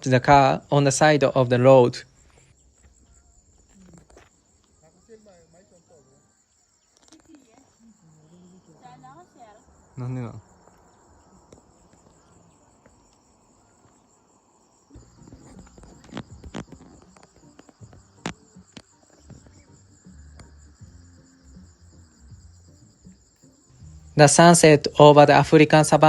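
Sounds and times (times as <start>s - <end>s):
insects chirring: 0.0s - 26.0s.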